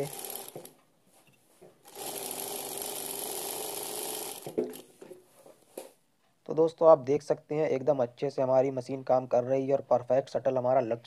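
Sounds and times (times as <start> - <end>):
sewing machine running: 0.0 - 0.8, 1.8 - 4.9.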